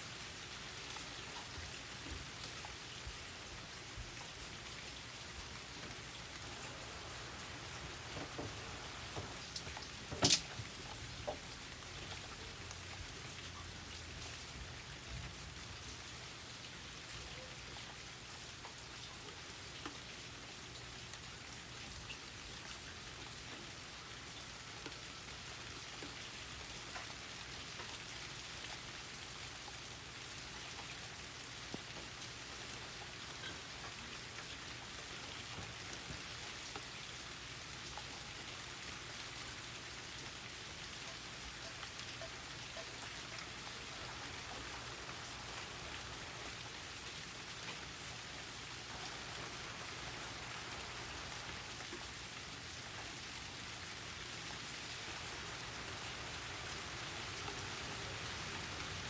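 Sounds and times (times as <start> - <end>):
steady rain falling: 0.0 - 59.0
raindrops tapping: 5.4 - 13.2.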